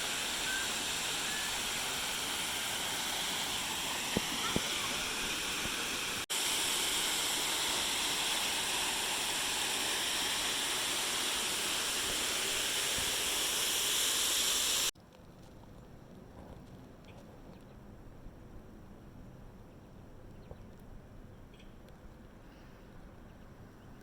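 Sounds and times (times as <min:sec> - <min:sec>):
waterfall rushing: 0:00.0 - 0:14.9.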